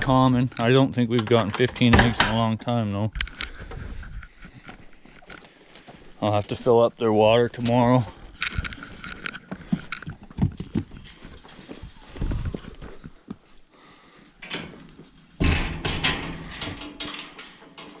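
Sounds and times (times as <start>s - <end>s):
footsteps and knocks: 7.7s - 13.5s.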